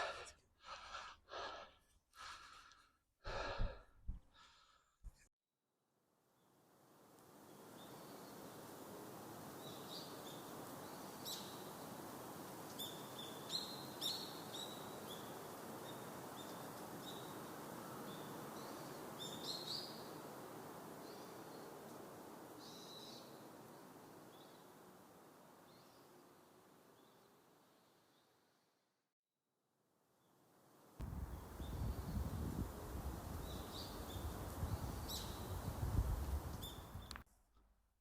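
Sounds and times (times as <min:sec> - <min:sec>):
small birds chirping: 0:09.5 - 0:24.8, 0:31.0 - 0:37.2.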